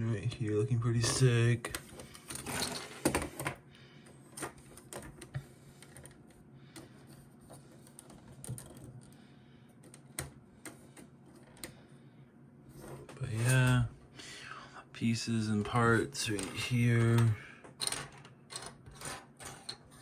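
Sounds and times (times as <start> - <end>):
plastic parts clicking and clattering: 1.0 - 3.6, 4.3 - 9.1, 15.6 - 20.0.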